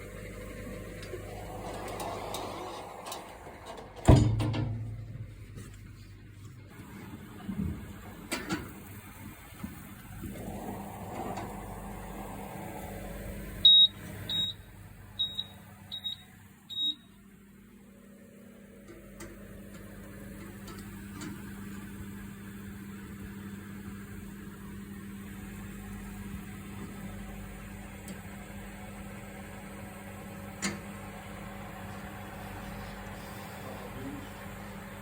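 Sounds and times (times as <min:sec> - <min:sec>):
oven humming: 0:00.0 - 0:35.0
oven control panel beeping: 0:13.5 - 0:17.3.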